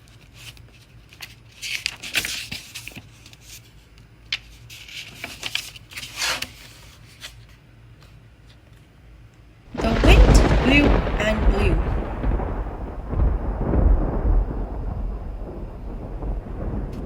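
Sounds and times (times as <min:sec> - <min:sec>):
book pages rustling: 0:04.7 - 0:07.6.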